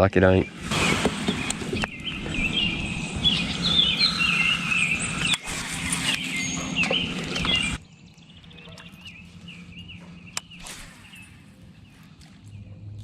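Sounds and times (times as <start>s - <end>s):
low outdoor rumble: 0.0s - 13.0s
songbird singing: 0.0s - 13.0s.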